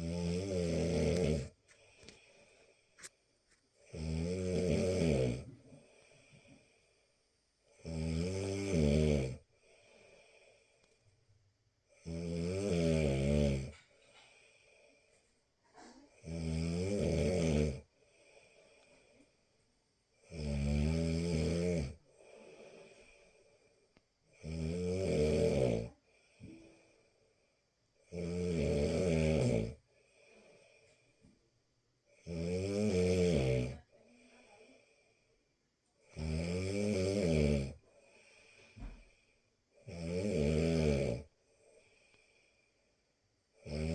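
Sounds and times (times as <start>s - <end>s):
person snoring: 0.0s - 2.3s, 3.8s - 6.8s, 7.7s - 10.7s, 12.0s - 13.8s, 16.1s - 19.2s, 20.2s - 23.4s, 24.3s - 26.9s, 28.0s - 30.8s, 32.2s - 34.6s, 36.0s - 42.6s, 43.6s - 43.9s
faint breathing out: 1.0s - 3.3s, 5.5s - 7.3s, 9.5s - 11.2s, 13.7s - 16.1s, 17.9s - 19.7s, 22.0s - 24.1s, 26.0s - 27.7s, 29.9s - 31.4s, 37.8s - 39.6s, 41.4s - 43.1s.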